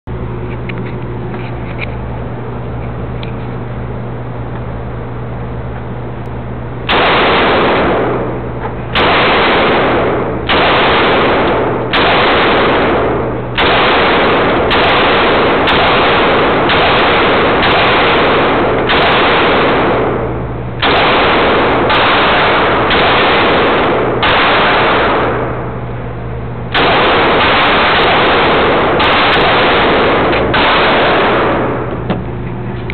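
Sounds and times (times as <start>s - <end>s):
pistol shots echoing: 6.9s - 25.9s, 26.7s - 32.1s.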